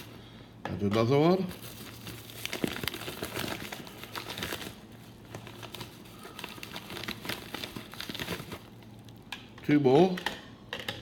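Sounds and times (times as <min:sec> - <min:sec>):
packaging crinkling and rustling: 0:01.0 - 0:09.4.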